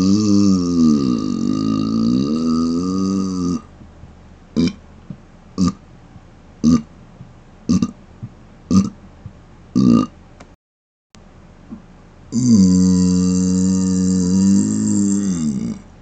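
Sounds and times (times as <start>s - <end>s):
man burping: 0.0s - 3.7s, 4.6s - 4.8s, 5.6s - 5.8s, 6.6s - 6.9s, 7.7s - 8.0s, 8.7s - 9.0s, 9.8s - 10.2s, 12.3s - 15.9s.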